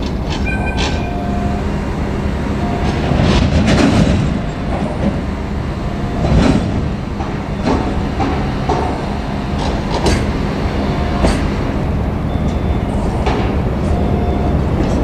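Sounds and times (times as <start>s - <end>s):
high squeals: 0.0s - 3.2s
freight train rumbling past: 0.0s - 15.0s
wheels clacking over rail joints: 0.0s - 15.0s.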